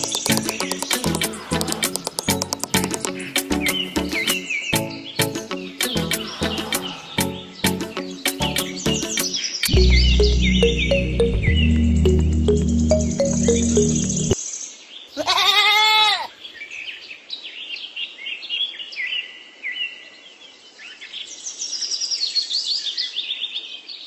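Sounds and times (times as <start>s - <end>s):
background music: 0.0s - 14.4s
small birds chirping: 0.0s - 15.2s
animal bleat: 15.1s - 16.4s.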